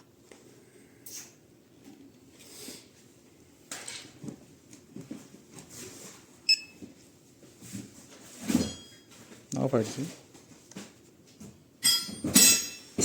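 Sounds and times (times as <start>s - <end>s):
handling and rustling noises: 3.7s - 11.6s.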